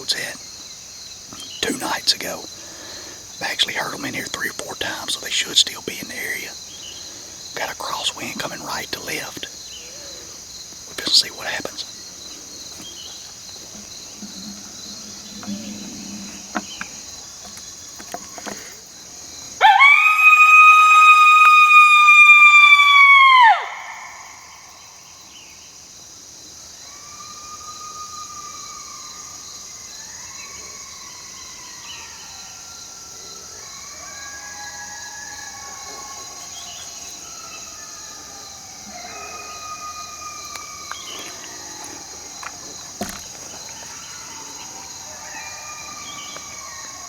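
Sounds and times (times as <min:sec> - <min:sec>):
crickets chirring: 0:00.0 - 0:47.0
coyotes howling: 0:01.3 - 0:25.3, 0:26.6 - 0:47.0
coyote howler call: 0:13.6 - 0:18.0, 0:19.6 - 0:24.8, 0:26.8 - 0:42.7, 0:43.7 - 0:47.0.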